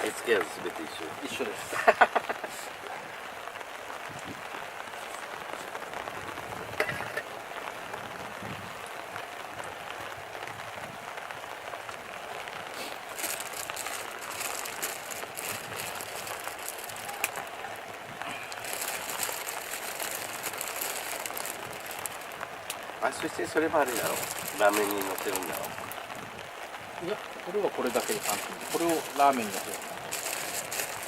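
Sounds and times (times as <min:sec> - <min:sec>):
stir-fry sizzling in a pan: 0:12.3 - 0:17.5.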